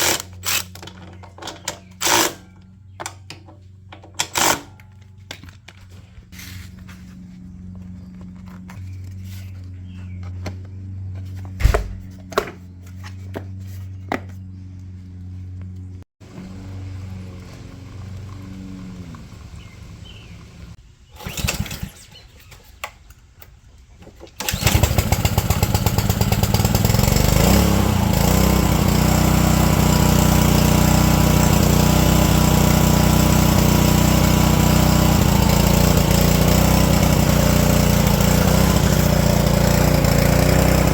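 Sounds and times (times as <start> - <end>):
small engine running: 0.0 - 3.2, 3.8 - 22.6, 24.4 - 40.9
handling clicks and knocks: 0.1 - 5.9.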